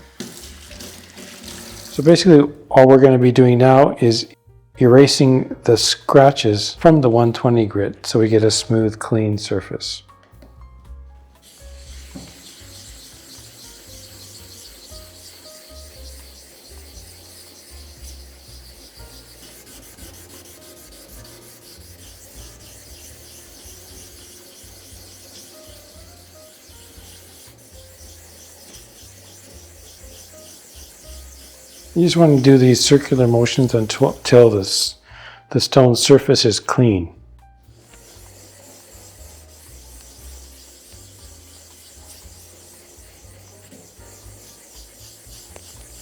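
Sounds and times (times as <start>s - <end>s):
background music with low bass: 0.0s - 46.0s
gritty scraping on sharpening stone: 11.4s - 34.3s, 37.7s - 46.0s.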